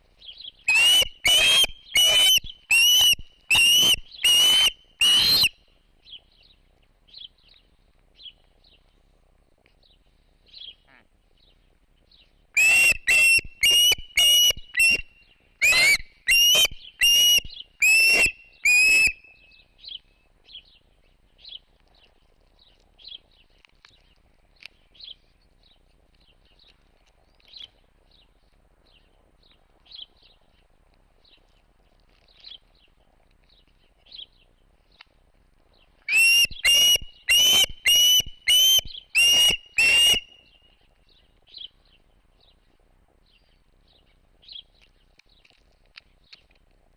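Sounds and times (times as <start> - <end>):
bird whistled calls: 0.7 - 5.5, 12.6 - 19.6, 36.1 - 40.7.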